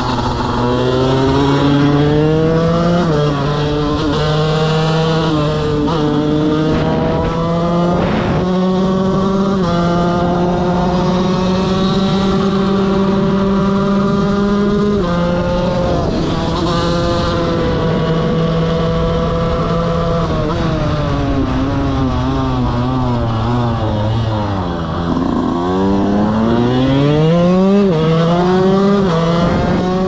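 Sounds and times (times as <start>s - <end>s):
motorcycle engine revving: 0.0s - 15.9s, 22.1s - 30.0s.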